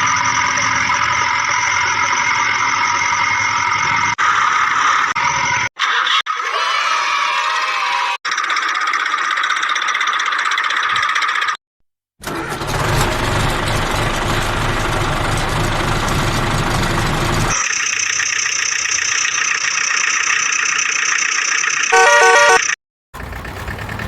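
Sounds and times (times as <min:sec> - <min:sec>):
stepped electronic beeps: 0:21.9 - 0:22.7.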